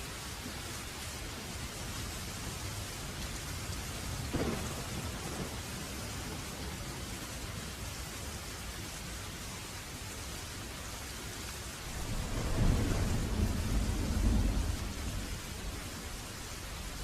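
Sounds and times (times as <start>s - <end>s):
steady rain: 0.0s - 17.0s
thunder rumble: 3.7s - 7.9s, 11.8s - 17.0s.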